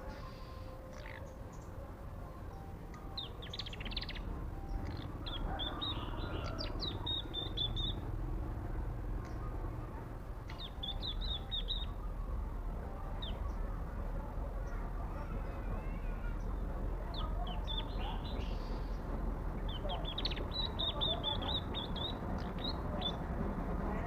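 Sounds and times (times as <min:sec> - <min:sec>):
steady low rumble: 0:00.0 - 0:24.0
small songbird chirping: 0:02.4 - 0:08.1, 0:10.5 - 0:12.0, 0:16.4 - 0:19.0, 0:19.6 - 0:23.3.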